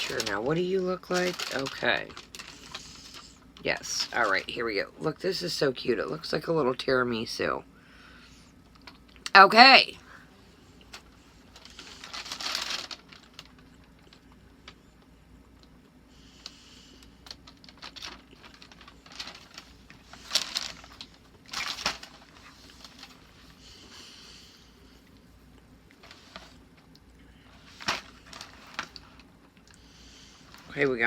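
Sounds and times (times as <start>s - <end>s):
wrapper rustling and clicks: 0.0s - 4.6s, 8.7s - 9.3s, 10.8s - 14.8s, 16.4s - 24.0s, 25.9s - 29.7s.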